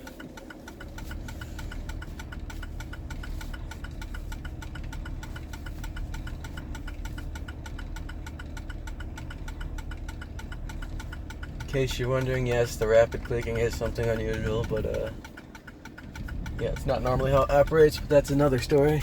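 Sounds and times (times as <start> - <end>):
engine low rumble: 0.0 - 19.0
rapid steady clicking: 0.0 - 19.0.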